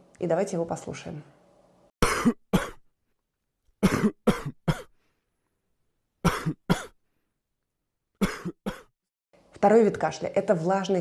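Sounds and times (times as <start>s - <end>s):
dry coughing: 2.0s - 2.8s, 3.8s - 4.9s, 6.2s - 7.0s, 8.2s - 8.9s.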